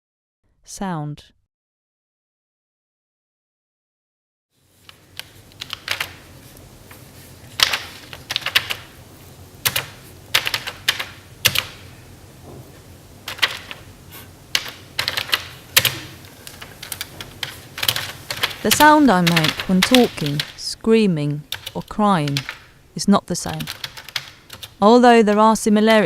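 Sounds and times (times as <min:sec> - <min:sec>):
keyboard typing: 0:04.9 - 0:06.3, 0:07.6 - 0:09.0, 0:09.6 - 0:11.8, 0:13.2 - 0:13.9, 0:14.5 - 0:20.7, 0:21.5 - 0:22.7, 0:23.4 - 0:26.0.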